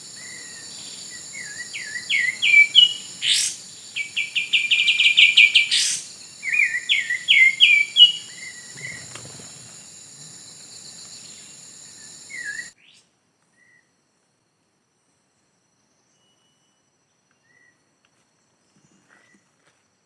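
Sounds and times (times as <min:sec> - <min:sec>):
high insect-like drone: 0:00.0 - 0:12.8
bird chirping: 0:00.0 - 0:13.9.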